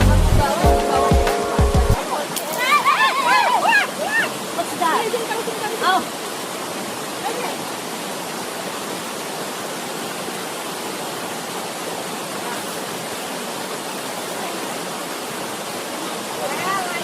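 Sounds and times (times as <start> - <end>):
water rushing over rocks: 0.0 - 17.0.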